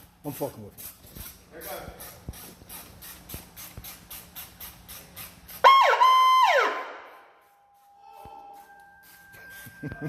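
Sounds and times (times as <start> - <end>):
electronic siren wailing: 5.7 - 7.1.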